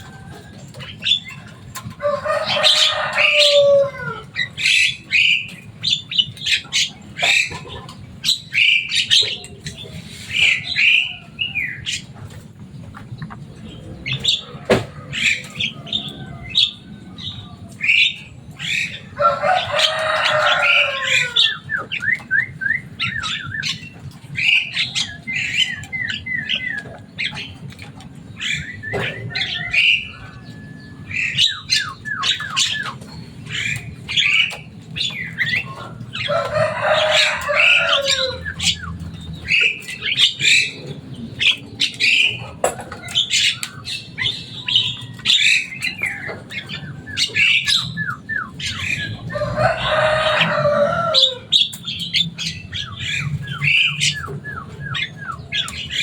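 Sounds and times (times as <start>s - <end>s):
myna chattering whistles and chirps: 28.5s - 35.9s.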